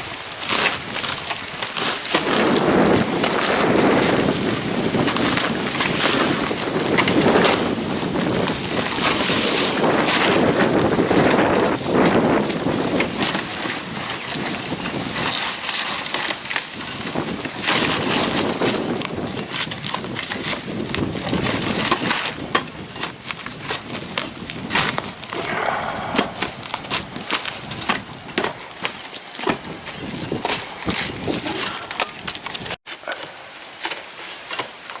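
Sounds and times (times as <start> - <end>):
wind buffeting microphone: 17.0 - 28.9.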